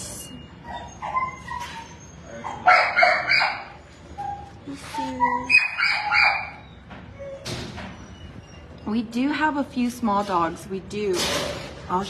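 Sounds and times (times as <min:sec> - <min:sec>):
dogs barking: 0:00.6 - 0:04.5, 0:05.2 - 0:08.7.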